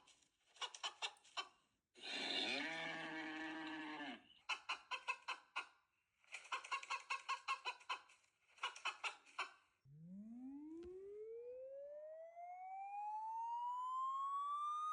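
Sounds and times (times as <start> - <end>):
chickens clucking and cackling: 0.5 - 1.6, 4.3 - 9.7.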